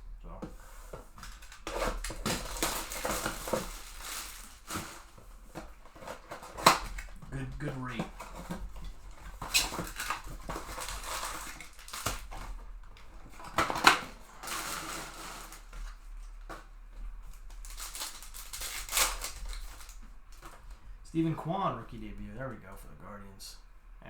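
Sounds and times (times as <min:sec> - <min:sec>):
foil wrapper crinkling: 0:00.9 - 0:20.9.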